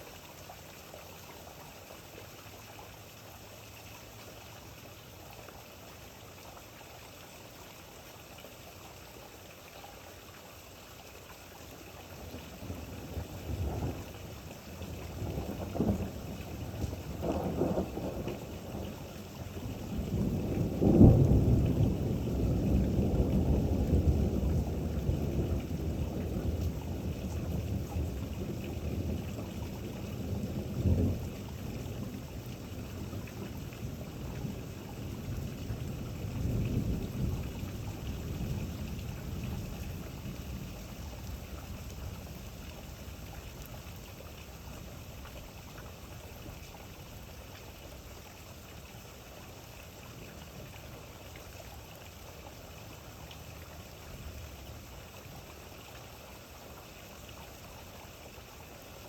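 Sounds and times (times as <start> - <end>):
steady rain falling: 0.0 - 59.0
thunder rumbling: 14.9 - 43.2.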